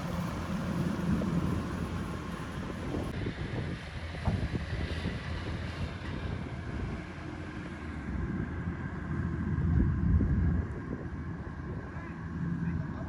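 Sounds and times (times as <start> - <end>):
harvester engine rumbling: 0.0 - 3.1
wind buffeting microphone: 0.0 - 7.2, 8.0 - 12.0.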